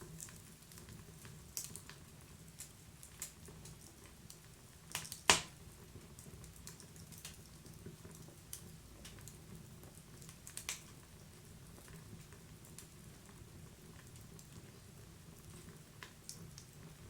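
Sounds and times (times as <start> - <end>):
wood fire crackling: 0.0 - 17.0
fire popping: 0.1 - 17.0.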